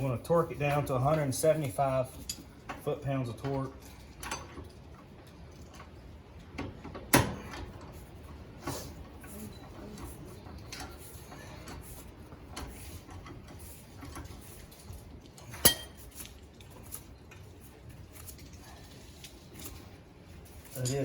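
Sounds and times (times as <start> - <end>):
ringing metal clink: 15.6 - 16.0.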